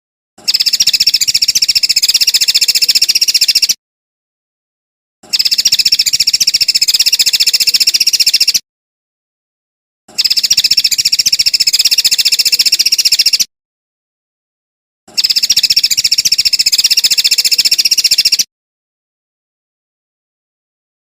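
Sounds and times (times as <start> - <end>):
songbird trilling: 0.4 - 3.8, 5.3 - 8.6, 10.1 - 13.5, 15.1 - 18.5.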